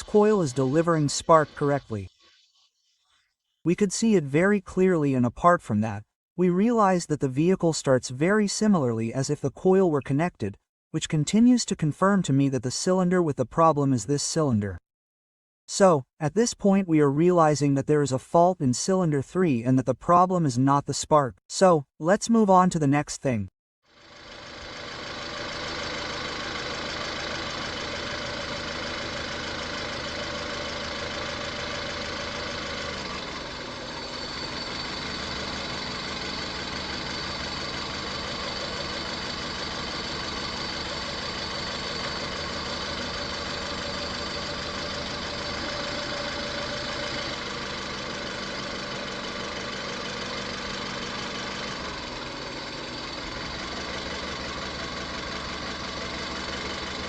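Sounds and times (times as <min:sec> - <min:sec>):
misfiring car engine idling: 0:23.9 - 0:57.0.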